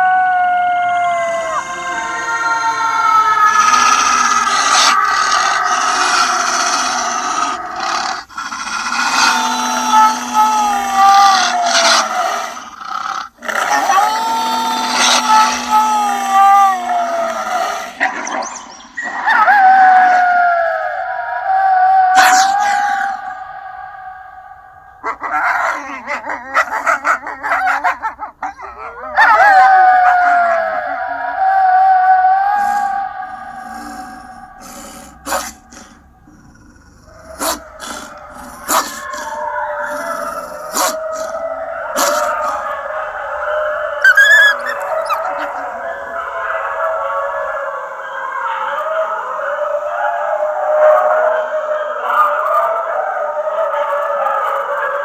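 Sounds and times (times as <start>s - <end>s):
wolves howling: 0.0s - 55.0s.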